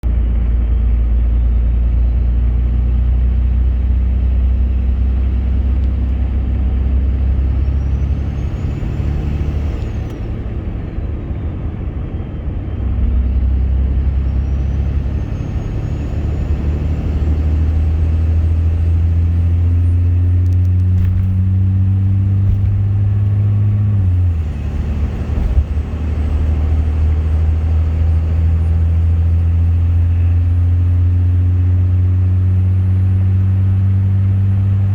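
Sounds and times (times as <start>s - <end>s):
diesel engine deep rumble: 0.0s - 34.9s
turbocharger whistle: 7.2s - 10.2s, 14.0s - 20.0s.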